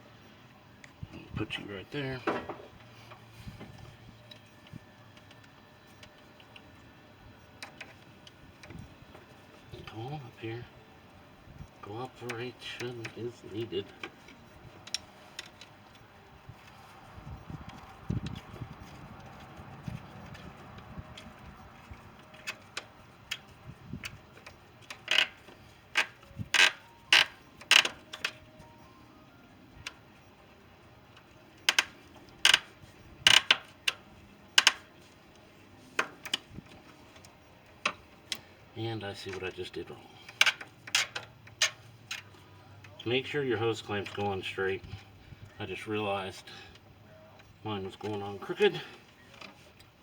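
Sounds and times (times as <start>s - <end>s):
metallic clicks on hose clamp: 11.7s - 16.8s, 20.2s - 28.8s, 31.1s - 34.9s, 40.2s - 45.6s.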